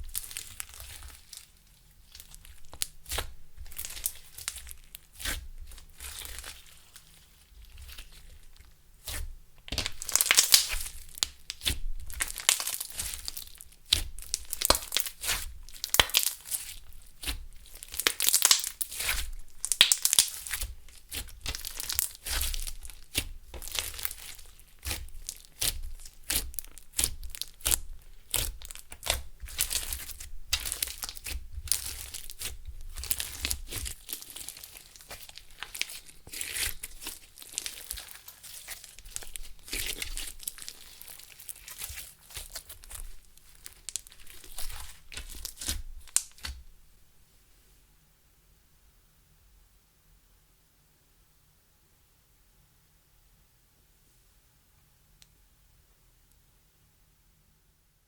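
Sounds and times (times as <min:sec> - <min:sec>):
slime squished by hand: 0:00.0 - 0:01.5, 0:02.1 - 0:07.1, 0:07.7 - 0:46.7.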